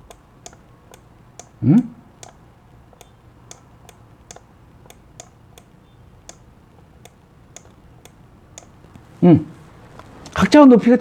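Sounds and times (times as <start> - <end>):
computer mouse clicks: 0.0 - 1.6, 2.2 - 9.1
faint low room hum: 0.0 - 11.0.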